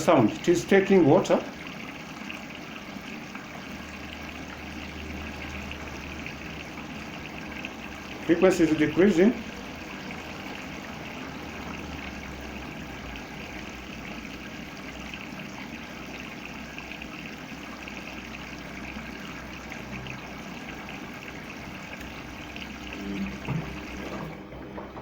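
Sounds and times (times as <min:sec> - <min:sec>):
water rushing into washing machine: 0:00.0 - 0:25.0
low hum: 0:22.4 - 0:25.0.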